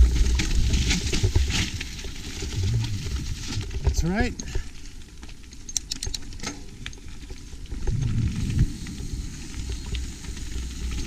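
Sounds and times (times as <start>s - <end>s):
bike rattling clicks: 3.8s - 11.0s
wind buffeting microphone: 7.8s - 10.8s
tyres hissing on wet surface: 8.3s - 11.0s.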